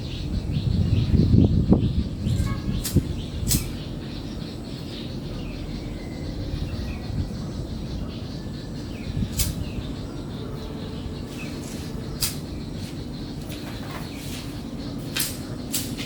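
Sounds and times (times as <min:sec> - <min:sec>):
small birds chirping: 0:00.0 - 0:16.0
steady low rumble: 0:00.0 - 0:16.0
sharp click: 0:02.8 - 0:03.8, 0:09.3 - 0:09.6, 0:12.2 - 0:12.4, 0:15.1 - 0:16.0.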